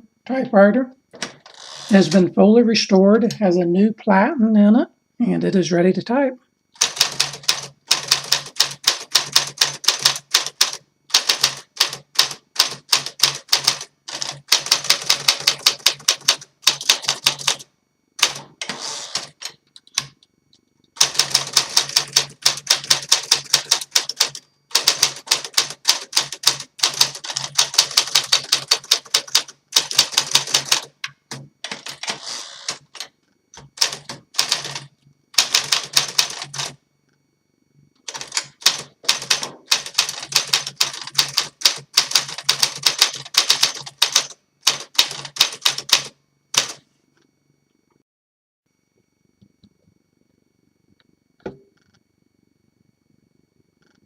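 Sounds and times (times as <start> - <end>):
typewriter keystrokes: 6.8 - 17.6, 18.2 - 20.2, 21.0 - 36.8, 38.0 - 46.8.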